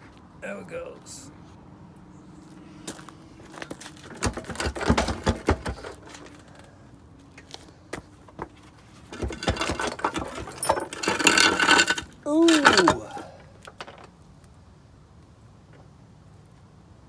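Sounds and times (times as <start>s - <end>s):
metallic clicking and rattling: 9.0s - 14.1s.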